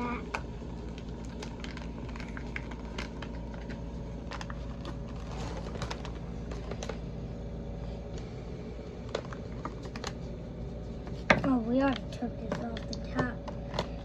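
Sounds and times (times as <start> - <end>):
plastic scratching on packaging: 1.4 - 6.9.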